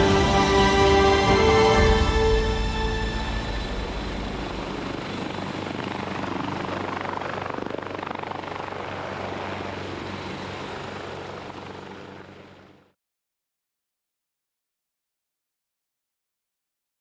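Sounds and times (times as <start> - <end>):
helicopter rotor and engine: 0.0 - 13.0.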